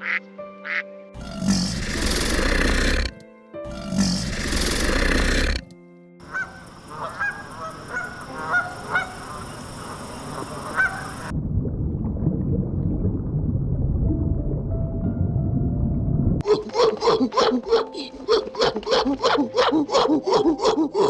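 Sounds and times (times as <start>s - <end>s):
geese honking: 6.2s - 11.3s.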